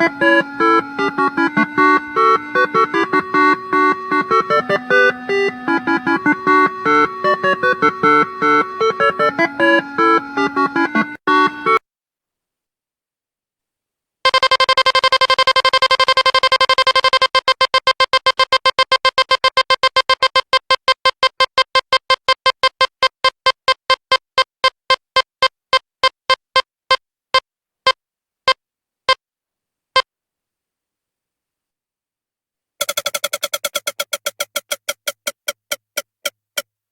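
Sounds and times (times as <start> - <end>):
slot machine beeps slowing down: 0.0 - 11.8, 32.8 - 34.1.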